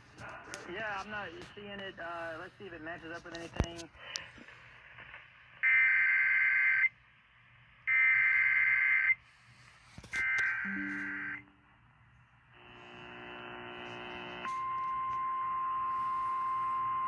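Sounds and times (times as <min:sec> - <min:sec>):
lower tone: 0:10.7 - 0:11.8.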